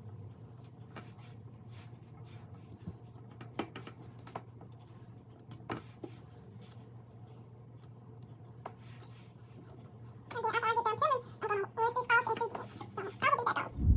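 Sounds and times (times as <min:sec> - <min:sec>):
steady low hum: 0:12.9 - 0:13.9.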